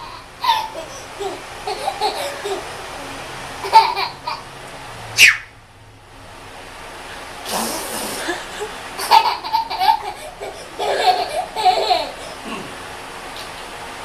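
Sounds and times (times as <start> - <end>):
baby giggling: 0.0 - 2.8, 3.6 - 4.5, 8.0 - 12.8
breathy blowing: 7.1 - 8.8
spitting puff: 7.4 - 8.7.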